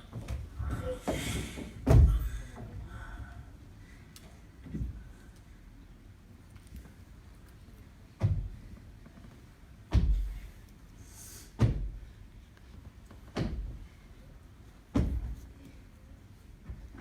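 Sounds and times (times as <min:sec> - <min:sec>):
heavy low thuds: 0:01.8 - 0:02.4.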